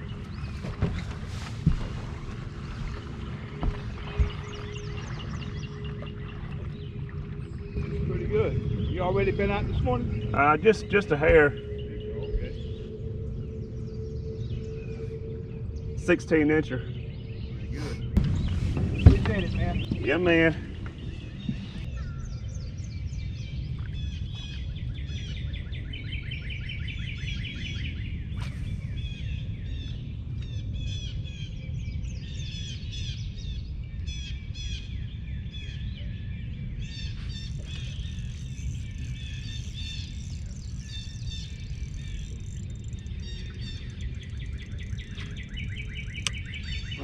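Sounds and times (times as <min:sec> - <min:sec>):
birds chirping and singing: 0:00.0 - 0:47.0
low rumble: 0:00.0 - 0:47.0.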